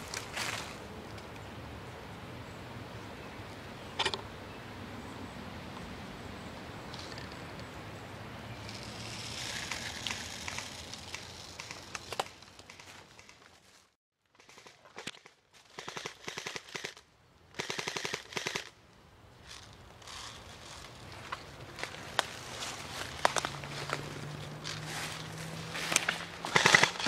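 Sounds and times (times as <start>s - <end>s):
rapid full-auto airsoft fire: 14.4s - 17.0s, 17.6s - 18.7s, 26.5s - 27.0s.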